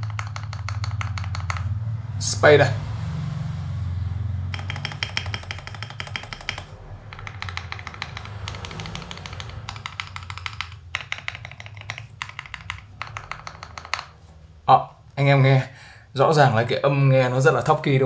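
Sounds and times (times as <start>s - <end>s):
mechanical keyboard typing: 0.0s - 1.7s, 4.5s - 14.3s.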